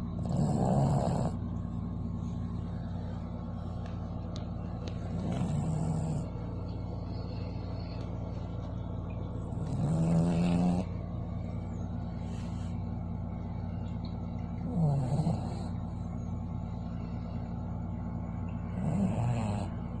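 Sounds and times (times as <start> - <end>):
dog snoring: 0.0 - 1.4, 4.9 - 8.0, 9.4 - 11.0, 14.6 - 16.0, 18.7 - 20.0
steady low hum: 0.0 - 20.0.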